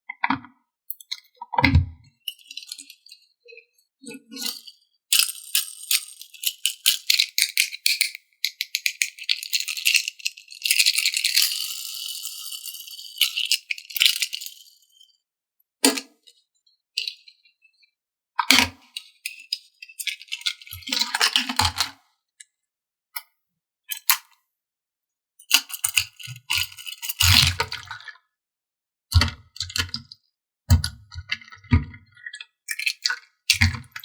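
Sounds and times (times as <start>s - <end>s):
plastic toy parts crackling: 4.2s - 14.5s.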